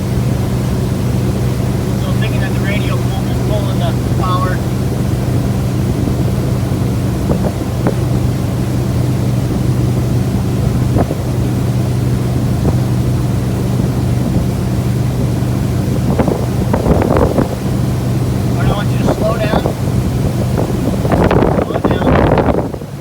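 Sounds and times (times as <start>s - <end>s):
motorboat engine humming: 0.0s - 23.0s
water rushing along hull: 0.0s - 23.0s
wind buffeting microphone: 0.0s - 23.0s.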